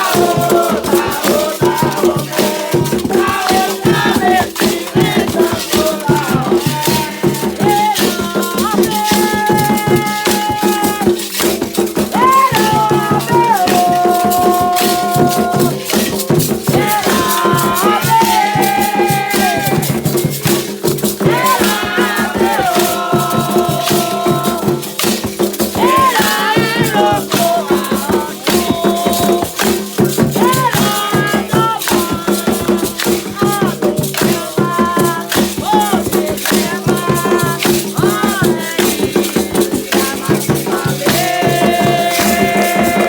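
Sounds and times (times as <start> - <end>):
rattle shaken: 0.0 - 43.0
person singing long notes: 40.2 - 43.0.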